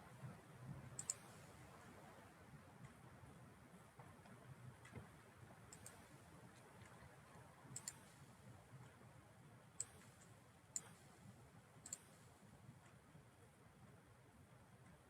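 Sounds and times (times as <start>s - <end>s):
computer mouse clicks: 1.0s - 1.4s, 5.7s - 6.2s, 7.7s - 8.2s, 9.8s - 11.1s, 11.8s - 12.2s.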